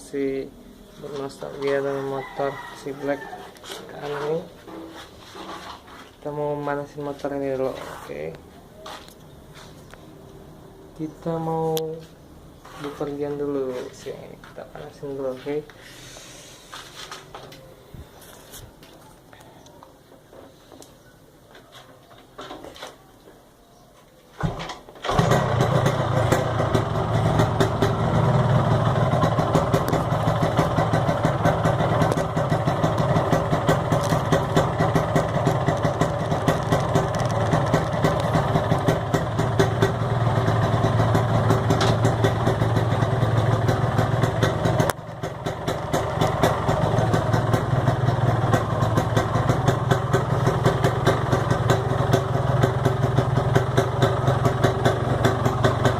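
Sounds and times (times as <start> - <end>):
motorcycle engine starting and running: 24.4 - 55.9.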